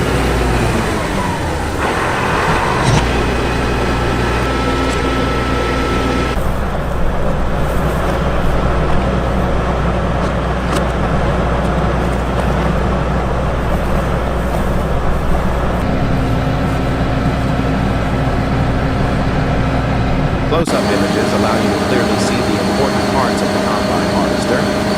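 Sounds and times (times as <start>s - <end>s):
combine harvester engine humming: 0.0s - 24.9s
steady tone: 1.3s - 6.4s, 15.8s - 24.9s.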